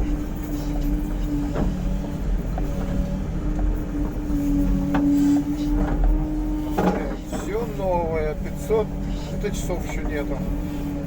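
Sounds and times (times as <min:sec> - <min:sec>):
excavator diesel engine under load: 0:00.0 - 0:11.0
hydraulics working: 0:00.0 - 0:11.0
long steady squeal: 0:00.0 - 0:11.0.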